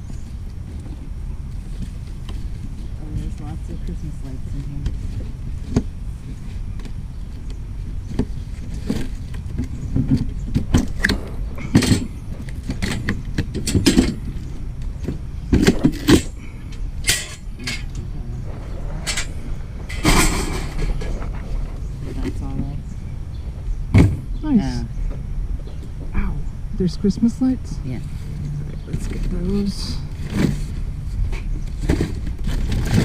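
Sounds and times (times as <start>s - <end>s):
steady low rumble: 0.0s - 33.0s
rummaging rattles and clinks: 10.8s - 14.4s, 17.0s - 17.9s, 19.0s - 21.4s.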